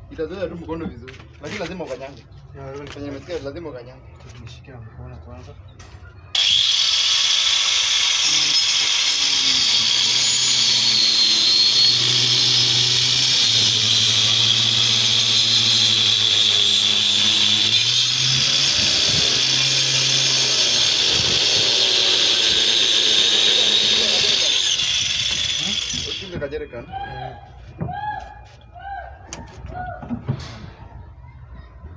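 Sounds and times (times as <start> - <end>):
electric power tool whining: 6.4 - 26.5.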